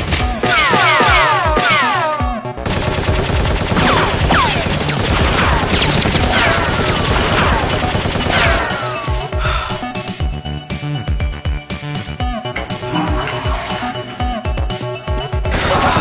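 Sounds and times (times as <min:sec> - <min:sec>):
rapid gunfire: 0:02.6 - 0:09.4, 0:15.5 - 0:16.0.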